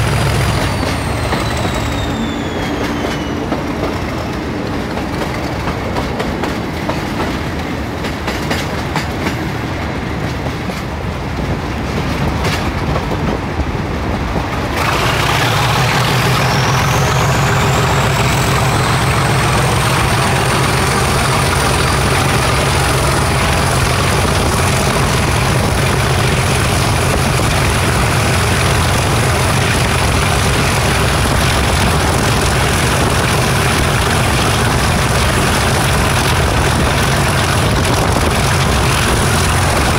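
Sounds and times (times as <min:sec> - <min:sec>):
turbocharger whistle: 0:00.0 - 0:03.5
diesel locomotive engine: 0:00.0 - 0:39.9
rail joint clicks: 0:00.0 - 0:39.9.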